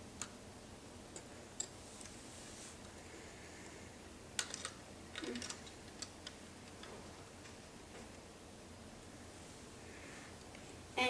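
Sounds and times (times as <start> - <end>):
plastic parts rattling: 4.4 - 6.9.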